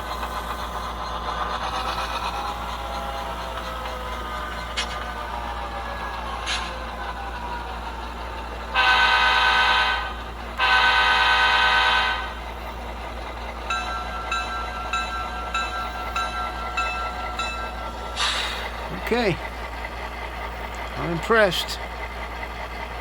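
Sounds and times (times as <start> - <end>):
low engine hum: 0.0 - 23.0
model locomotive air horn: 8.8 - 12.4
locomotive bell ringing: 13.4 - 19.6.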